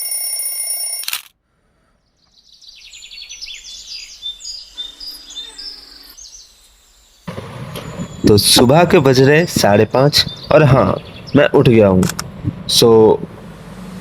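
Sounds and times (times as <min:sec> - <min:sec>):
alarm ringing: 0:00.0 - 0:01.2
birds chirping: 0:02.0 - 0:14.0.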